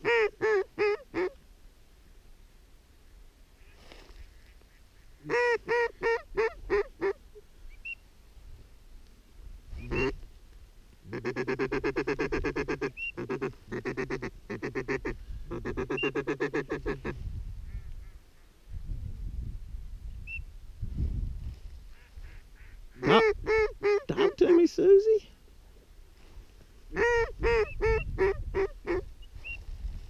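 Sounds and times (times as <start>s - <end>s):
duck call quacks: 0.0s - 1.4s, 5.2s - 7.2s, 9.8s - 10.2s, 11.1s - 18.2s, 22.0s - 24.4s, 26.9s - 29.1s.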